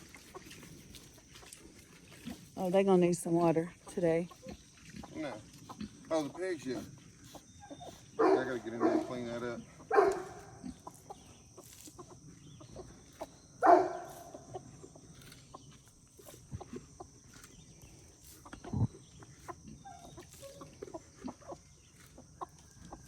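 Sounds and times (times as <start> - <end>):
hens clucking: 0.0 - 23.0
small clicks and pecks: 10.1 - 12.1, 15.1 - 19.6.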